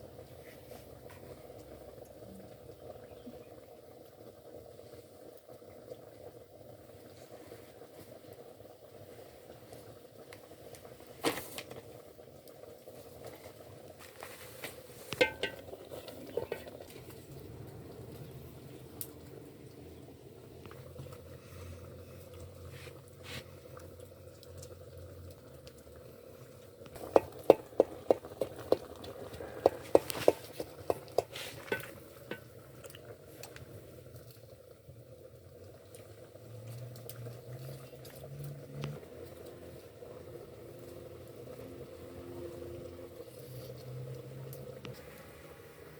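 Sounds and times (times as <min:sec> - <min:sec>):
cooking pot simmering: 0:00.0 - 0:45.9
metal utensil knocking on pot: 0:15.2 - 0:16.8, 0:27.0 - 0:29.0, 0:29.6 - 0:32.4.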